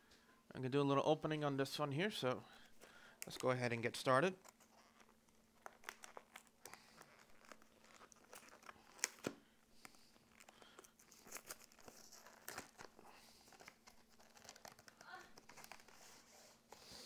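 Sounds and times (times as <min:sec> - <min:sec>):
plastic shrink wrap crinkling: 0:03.3 - 0:16.3.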